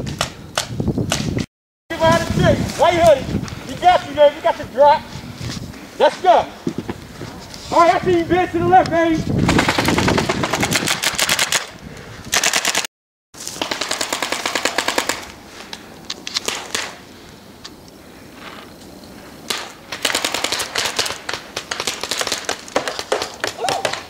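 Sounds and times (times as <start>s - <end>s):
paintball markers firing: 19.5s - 24.0s.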